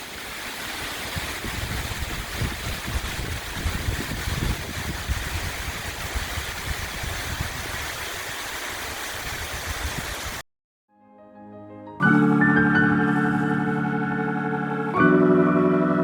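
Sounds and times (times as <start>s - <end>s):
waterfall rushing: 0.0s - 10.4s.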